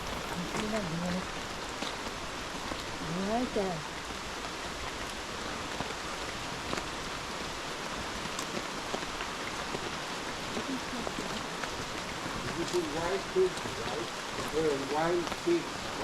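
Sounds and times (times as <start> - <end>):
steady rain falling: 0.0 - 16.0
raindrops ticking: 8.3 - 16.0.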